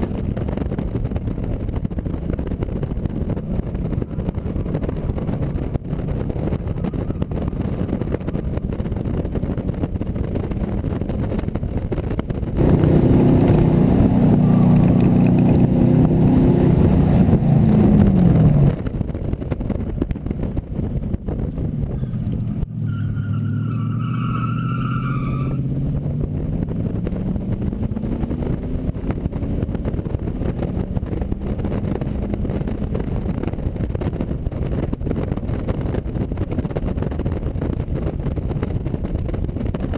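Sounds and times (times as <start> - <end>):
wind noise: 0.0 - 39.9
car engine revving hard: 12.6 - 18.8
tyre squeal: 22.8 - 25.7.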